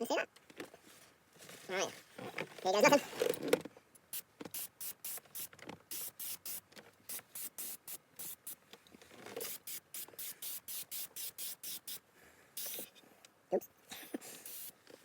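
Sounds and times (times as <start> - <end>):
spray can hissing bursts: 4.1 - 8.6, 9.4 - 12.0, 12.6 - 12.9, 14.4 - 14.8.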